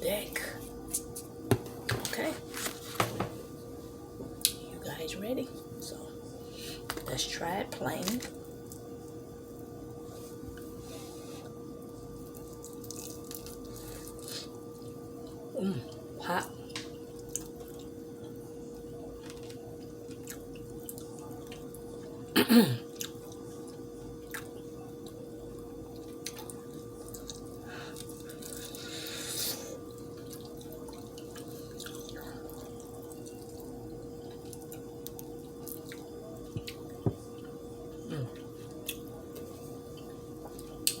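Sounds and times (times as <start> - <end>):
steady electrical hum: 0.0 - 41.0
person chewing food: 12.2 - 15.0, 22.9 - 25.2, 26.0 - 33.7.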